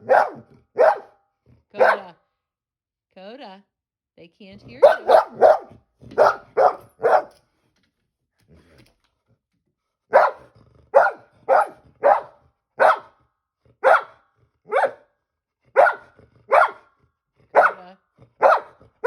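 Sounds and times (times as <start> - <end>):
dog barking: 0.0 - 1.2, 1.8 - 2.2, 4.8 - 7.4, 10.1 - 13.2, 13.8 - 15.1, 15.7 - 16.9, 17.5 - 19.0.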